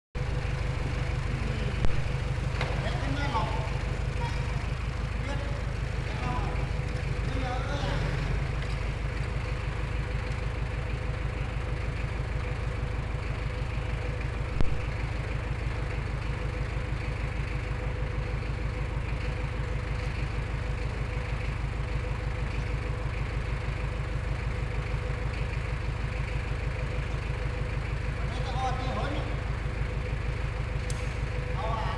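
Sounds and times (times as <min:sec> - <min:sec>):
large engine idling: 0:00.1 - 0:31.9.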